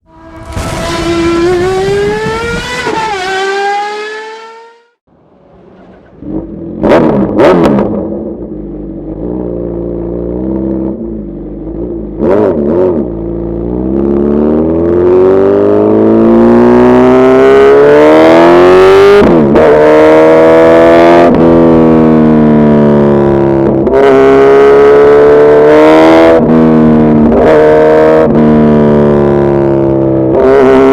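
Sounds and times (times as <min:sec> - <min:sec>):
motorcycle engine revving: 0:00.0 - 0:30.9
short intro sound: 0:00.1 - 0:02.4.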